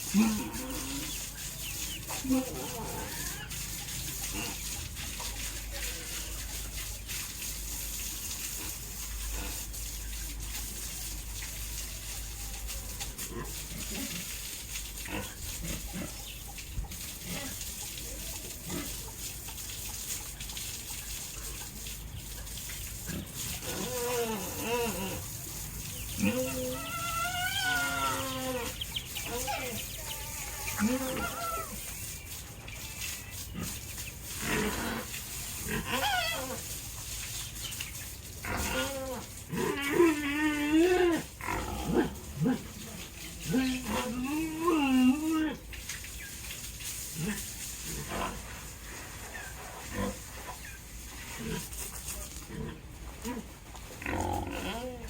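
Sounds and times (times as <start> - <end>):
pig grunting: 0.0 - 1.4, 2.1 - 3.6, 4.2 - 4.8, 8.6 - 9.8, 13.2 - 14.4, 15.0 - 16.3, 17.2 - 17.7, 18.6 - 19.1, 23.0 - 25.4, 26.0 - 31.8, 33.5 - 36.7, 38.4 - 45.6, 47.1 - 48.6, 49.9 - 50.3, 51.3 - 55.0.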